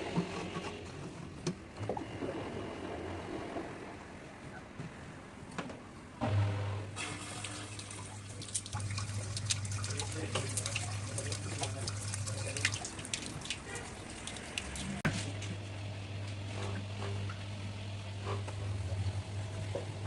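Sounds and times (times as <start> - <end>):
tap water splashing in sink: 7.1 - 15.0.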